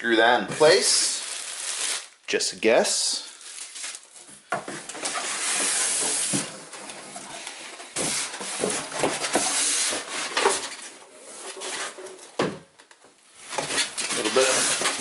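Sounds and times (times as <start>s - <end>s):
plastic and cardboard rustling: 0.2s - 2.2s, 3.1s - 12.7s, 13.4s - 15.0s.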